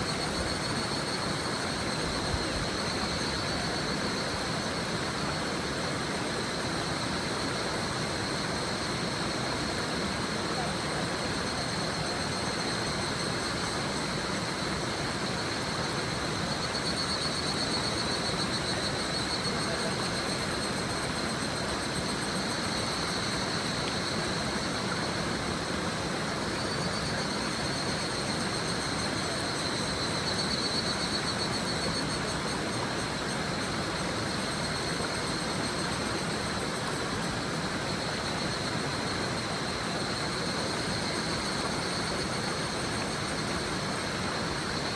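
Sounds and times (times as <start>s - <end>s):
cicadas trilling: 0.0s - 44.9s.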